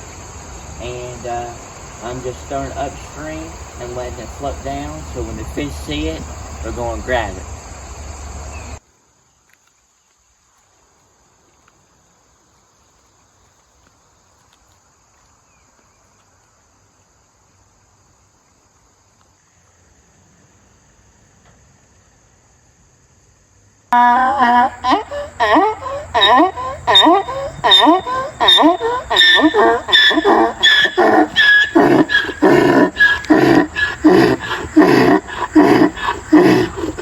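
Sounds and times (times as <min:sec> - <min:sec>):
insects chirring: 0:00.0 - 0:37.0.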